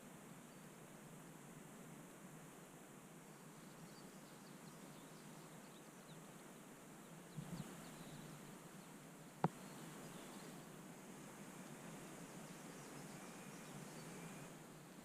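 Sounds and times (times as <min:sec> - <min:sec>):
faint steady hiss: 0:00.0 - 0:15.0
faint high chirps: 0:12.2 - 0:14.6.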